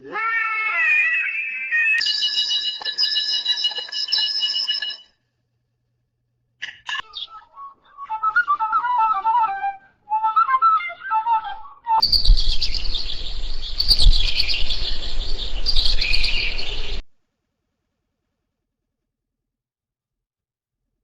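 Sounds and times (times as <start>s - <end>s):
birds chattering: 12.0s - 17.0s
low rumble: 12.1s - 17.0s.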